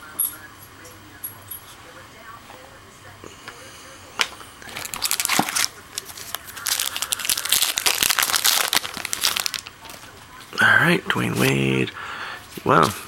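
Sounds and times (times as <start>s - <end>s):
card pack wrapper crinkling: 4.7s - 10.0s.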